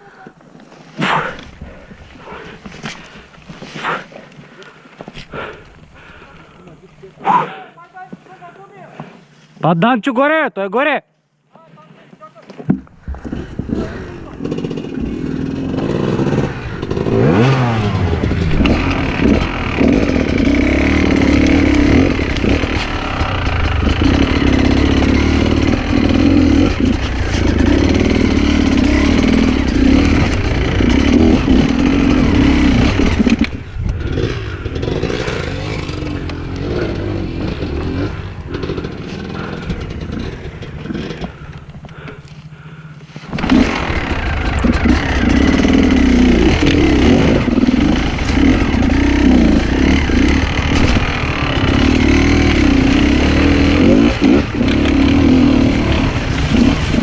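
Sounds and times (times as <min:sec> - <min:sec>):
dirt bike engine revving: 0:13.2 - 0:57.0.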